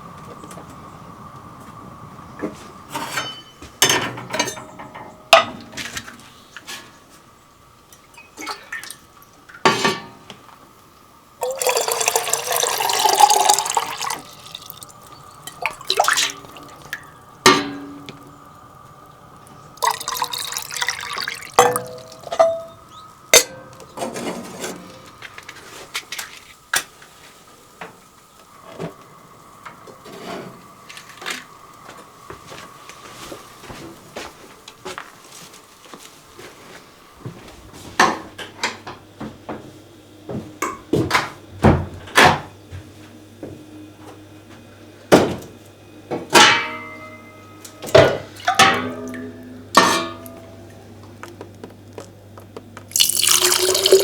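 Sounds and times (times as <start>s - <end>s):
faint steady hum: 0.0s - 54.0s
water pouring into a vessel: 11.4s - 17.5s, 19.8s - 22.3s, 52.9s - 54.0s.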